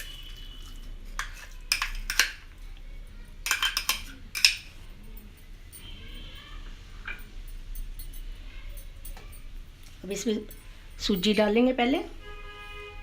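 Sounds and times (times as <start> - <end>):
metal spoon scraping pan: 0.0 - 2.4.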